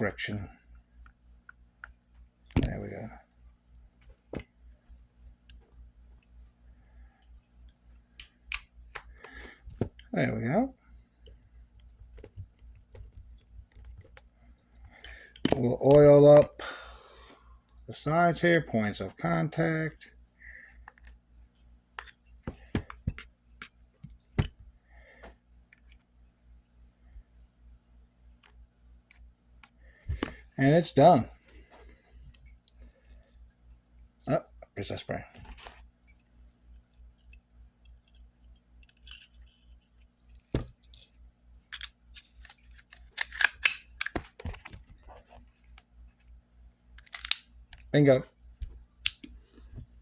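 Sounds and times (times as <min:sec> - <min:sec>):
small metal parts clicking: 0:36.7 - 0:44.2.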